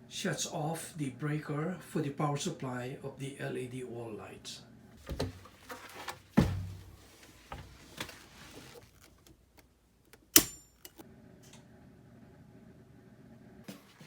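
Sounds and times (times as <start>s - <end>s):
sharp metallic click with ring: 10.4s - 11.0s.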